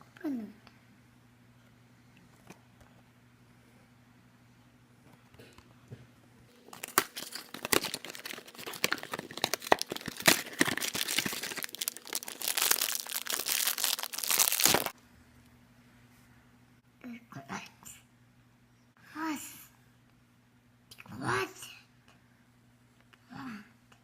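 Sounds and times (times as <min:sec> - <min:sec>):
plastic wrapper crinkling and tearing: 0:06.6 - 0:15.0.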